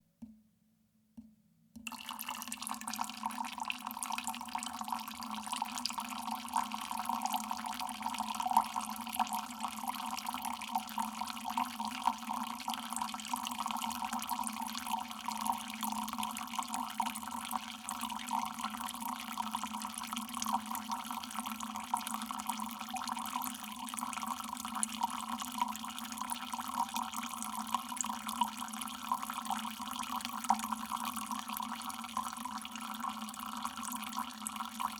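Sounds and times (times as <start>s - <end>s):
water dripping: 1.8s - 4.1s.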